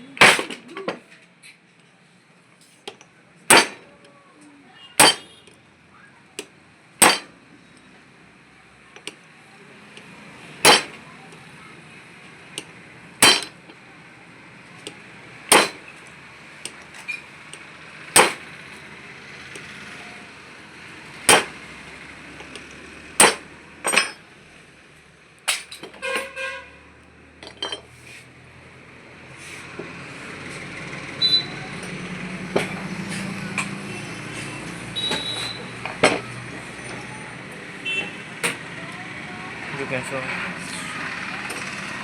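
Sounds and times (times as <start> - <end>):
hammer striking metal: 0.2 - 0.6, 3.5 - 3.9, 5.0 - 5.4, 7.0 - 7.4, 10.6 - 11.0, 13.2 - 13.6, 15.5 - 15.9, 18.2 - 18.5, 21.3 - 21.6, 23.2 - 24.2
metallic rattle: 13.2 - 13.6.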